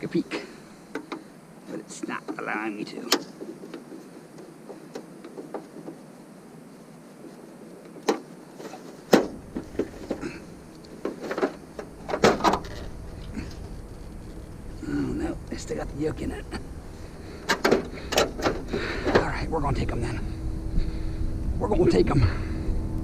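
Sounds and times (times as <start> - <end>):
low rumble: 11.6 - 23.0.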